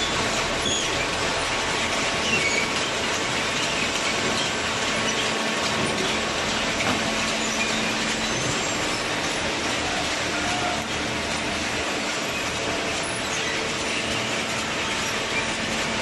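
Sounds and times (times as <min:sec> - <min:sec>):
baler machinery running: 0:00.0 - 0:16.0
faint metallic squeaks and clicks: 0:00.6 - 0:01.2, 0:02.2 - 0:05.4.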